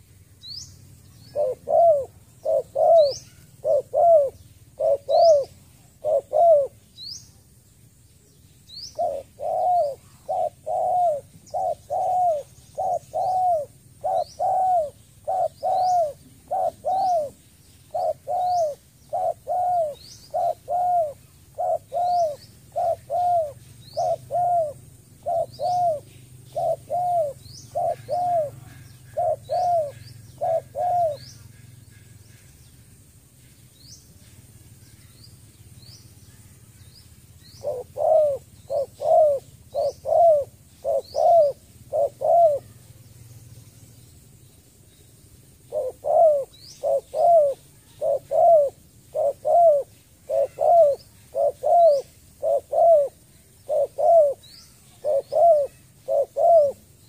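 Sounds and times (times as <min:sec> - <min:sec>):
small bird high chirps: 0:00.3 - 0:07.5, 0:08.1 - 0:57.0
dove cooing: 0:01.2 - 0:07.0, 0:08.9 - 0:31.7, 0:37.5 - 0:43.0, 0:45.6 - 0:57.0.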